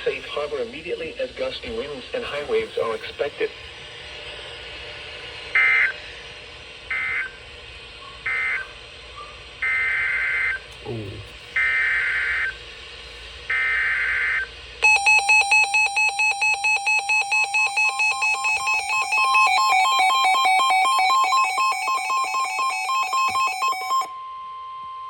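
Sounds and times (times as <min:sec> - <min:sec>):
buzzy data burst: 0:14.8 - 0:24.1
pulsing two-pitch attention tone: 0:14.8 - 0:25.0.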